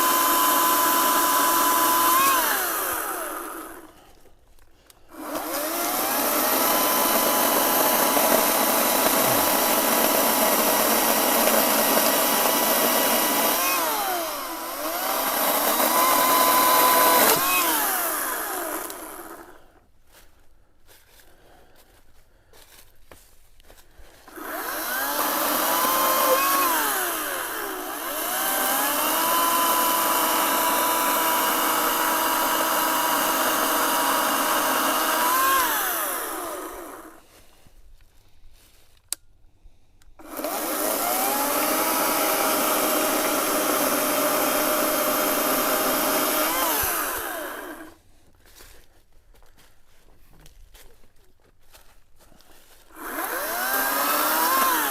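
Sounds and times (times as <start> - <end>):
electric chainsaw motor whine: 0.0 - 4.0, 5.1 - 19.6, 24.2 - 37.2, 40.2 - 48.0, 52.9 - 54.9
click: 39.0 - 39.2.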